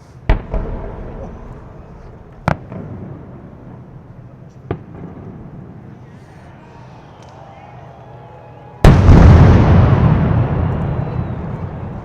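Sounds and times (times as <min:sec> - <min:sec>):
sharp firework bangs: 0:00.3 - 0:03.5, 0:08.8 - 0:12.0
fireworks shells booming: 0:00.3 - 0:06.0, 0:08.8 - 0:12.0.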